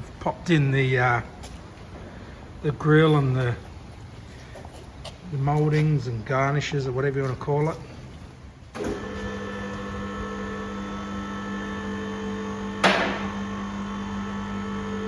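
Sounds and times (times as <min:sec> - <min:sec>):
steady machine hum: 0:08.5 - 0:15.0
sharp knock: 0:12.8 - 0:13.3.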